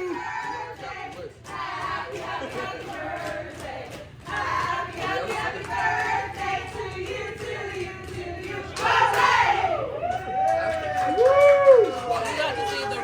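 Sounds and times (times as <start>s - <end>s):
group of people singing: 0.0s - 9.9s.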